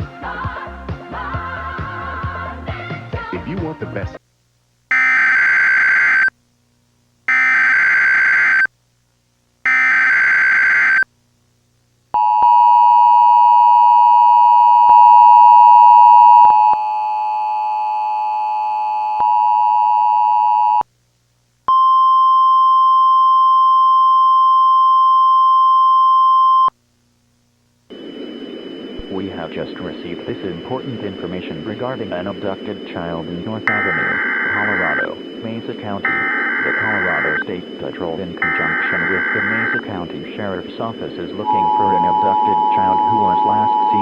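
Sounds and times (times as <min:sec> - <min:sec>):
buzzy data tones: 0:27.9 - 0:44.0
steady high tone: 0:27.9 - 0:44.0
two-tone attention signal: 0:30.4 - 0:39.9, 0:41.4 - 0:44.0.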